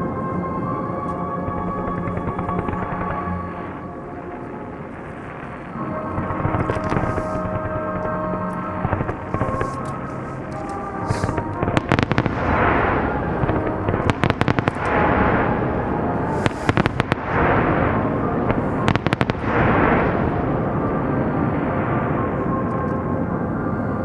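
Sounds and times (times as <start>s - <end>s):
fireworks bangs: 1.5s - 22.5s
fireworks hiss: 6.4s - 8.1s, 8.8s - 15.5s, 16.2s - 20.1s.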